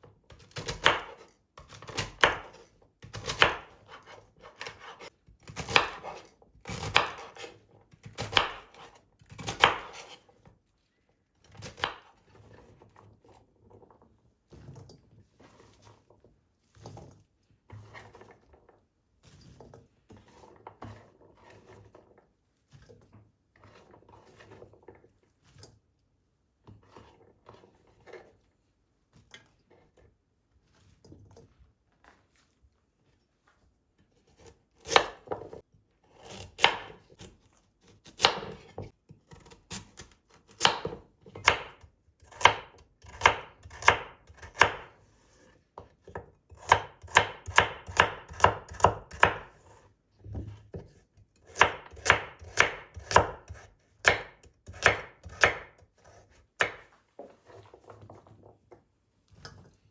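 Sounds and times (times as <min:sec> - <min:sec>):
knife chopping on cutting board: 0:00.3 - 0:10.2, 0:11.4 - 0:12.2, 0:34.3 - 0:44.9, 0:45.8 - 0:49.7, 0:50.4 - 0:57.0
soft handling and rustling: 0:27.9 - 0:34.0, 0:56.9 - 0:59.9.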